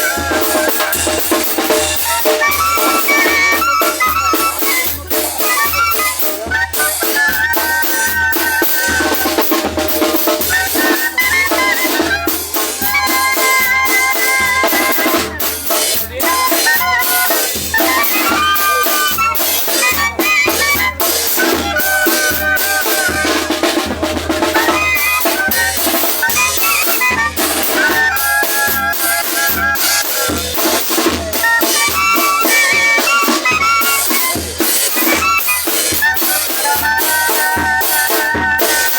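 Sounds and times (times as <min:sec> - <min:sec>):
bass drum and snare beat: 0:00.0 - 0:38.9
brass and reed melody: 0:00.0 - 0:38.9.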